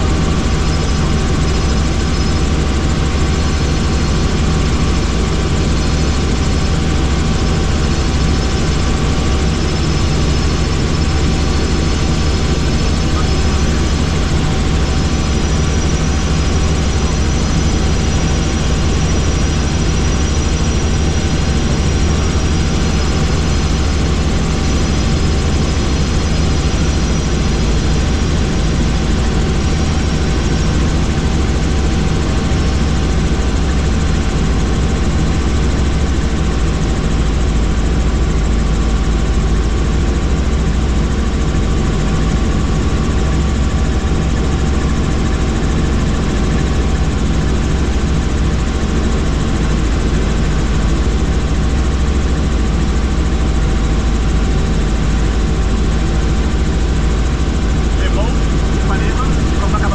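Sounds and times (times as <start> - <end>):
faint high whine: 0.0 - 31.2, 55.3 - 59.9
helicopter rotor and engine drone: 0.0 - 59.9.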